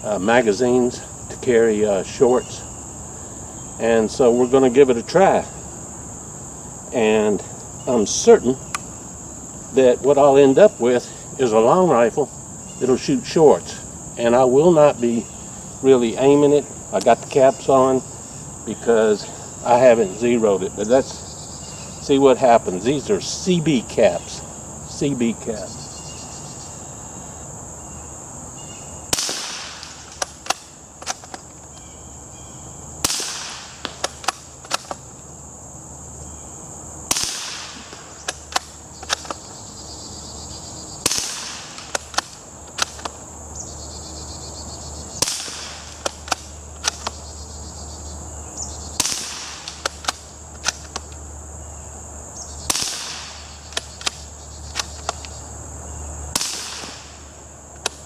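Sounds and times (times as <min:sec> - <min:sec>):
crickets chirping: 0:00.0 - 0:58.0
rifle shots: 0:29.1 - 0:31.4, 0:33.0 - 0:35.1, 0:37.1 - 0:39.5, 0:41.0 - 0:43.2, 0:45.2 - 0:47.2, 0:49.0 - 0:51.1, 0:52.7 - 0:55.2, 0:56.3 - 0:58.0
metallic clicks of rifle bolt: 0:29.2 - 0:31.8, 0:33.1 - 0:35.1, 0:37.1 - 0:39.5, 0:41.1 - 0:43.2, 0:45.2 - 0:47.2, 0:49.0 - 0:51.2, 0:52.7 - 0:55.4.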